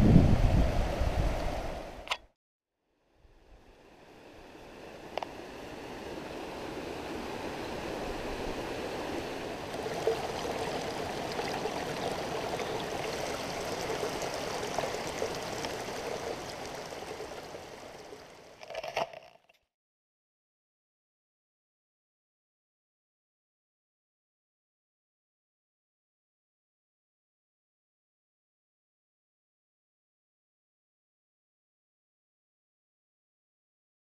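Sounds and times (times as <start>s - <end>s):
mountain stream running: 3.4s - 19.3s.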